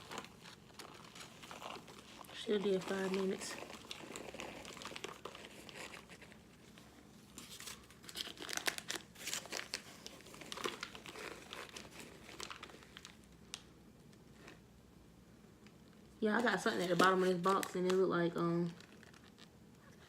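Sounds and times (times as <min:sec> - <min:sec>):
cardboard box crinkling: 0:00.0 - 0:13.2, 0:16.4 - 0:19.5.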